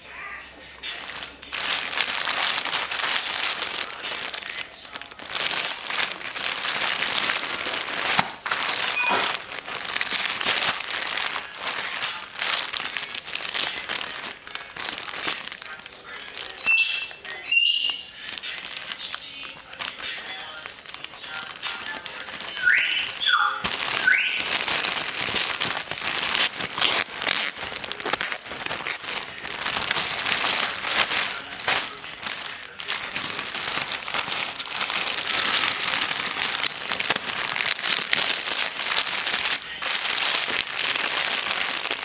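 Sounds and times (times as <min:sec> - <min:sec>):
packaging crinkling: 0:00.0 - 0:42.0
short squeaks: 0:08.9 - 0:09.4.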